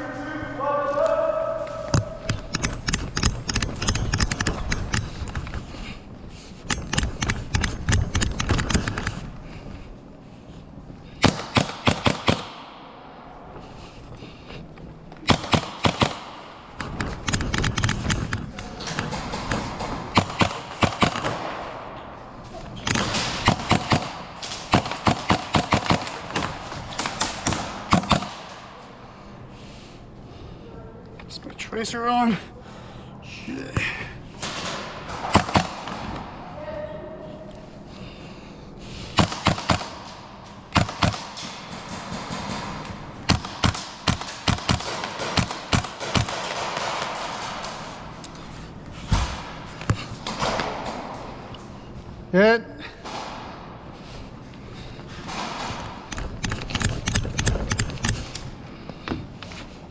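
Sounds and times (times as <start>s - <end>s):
airsoft guns firing bursts: 11.2s - 12.8s, 15.2s - 18.4s, 19.1s - 21.7s, 22.8s - 28.7s, 34.4s - 36.2s, 39.1s - 48.1s.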